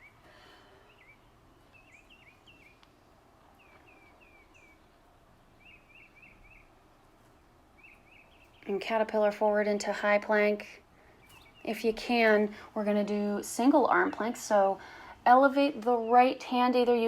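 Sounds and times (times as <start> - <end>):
faint bird chirps: 0.0 - 7.2, 11.0 - 11.8.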